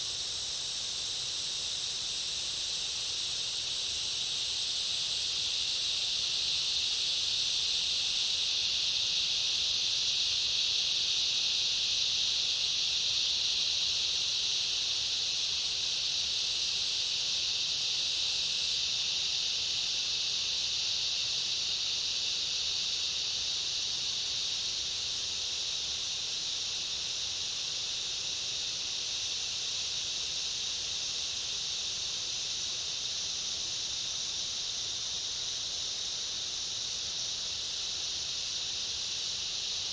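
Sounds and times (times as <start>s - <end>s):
cicada chorus buzzing: 0.0s - 39.9s
higher insect drone: 0.0s - 39.9s.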